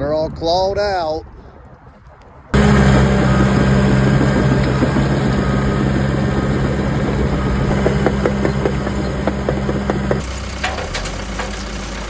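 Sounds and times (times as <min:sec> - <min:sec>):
excavator diesel engine running: 0:02.6 - 0:12.0
clicks and knocks: 0:03.3 - 0:11.7.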